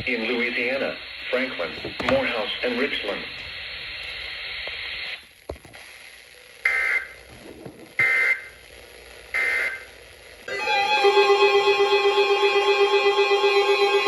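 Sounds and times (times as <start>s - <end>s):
radio static hiss: 0.0s - 10.5s.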